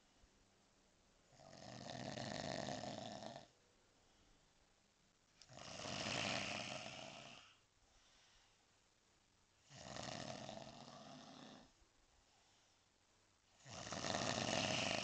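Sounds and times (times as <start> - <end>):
quiet breathing: 0.0 - 0.4, 1.2 - 4.7, 5.3 - 9.0, 9.6 - 15.0
man snoring loudly: 1.4 - 3.5, 5.5 - 7.5, 9.7 - 11.7, 13.6 - 15.0.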